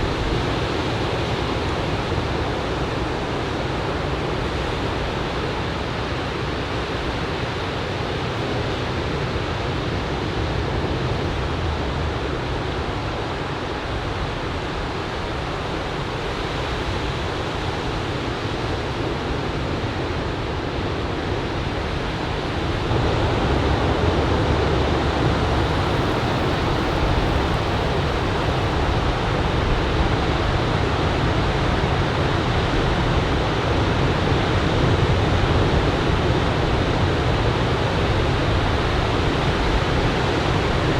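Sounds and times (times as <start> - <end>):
wind on microphone: 0.0 - 40.9
ocean surf breaking: 22.6 - 30.6.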